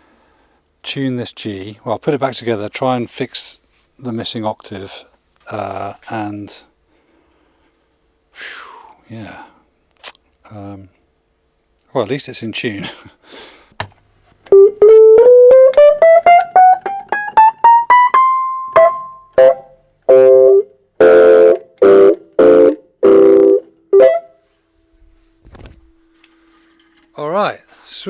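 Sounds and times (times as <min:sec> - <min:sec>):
electric keyboard notes and chords: 0:14.5 - 0:24.4.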